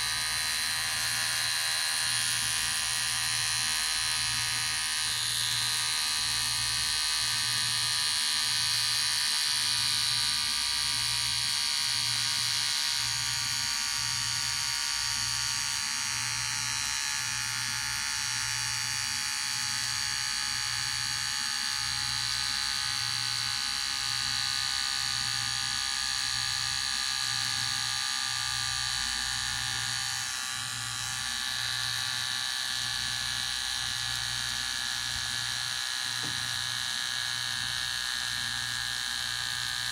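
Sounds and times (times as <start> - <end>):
electric hair clipper buzzing: 0.0 - 39.9.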